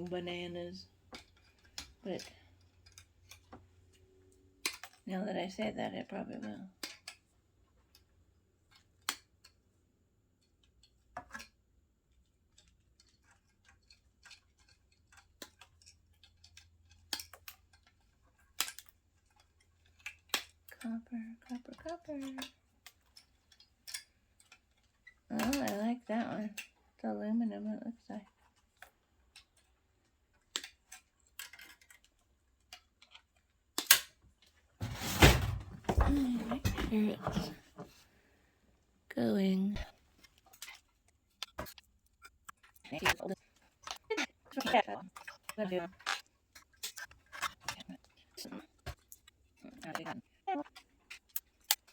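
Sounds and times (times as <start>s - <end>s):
small metal parts clicking: 4.6s - 5.1s, 10.4s - 25.8s, 28.3s - 34.5s, 40.2s - 51.9s
clicks of metal parts and tools: 6.4s - 7.2s, 12.5s - 20.8s, 21.4s - 25.8s, 28.3s - 37.9s.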